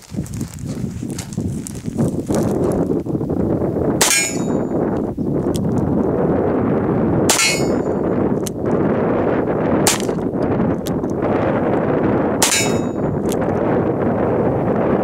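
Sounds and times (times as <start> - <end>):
steady rushing noise: 5.4 - 15.0.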